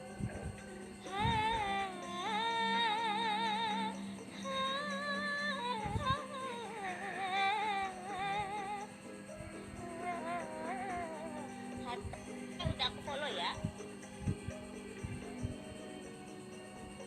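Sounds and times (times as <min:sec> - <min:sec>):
woman singing with vibrato: 0:01.1 - 0:08.9, 0:09.8 - 0:13.6.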